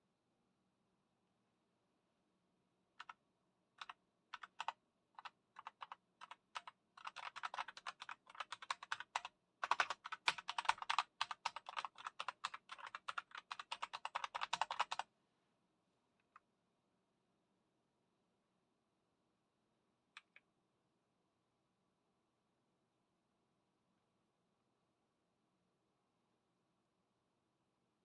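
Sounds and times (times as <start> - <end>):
typing on mechanical keyboard: 3.8 - 15.0.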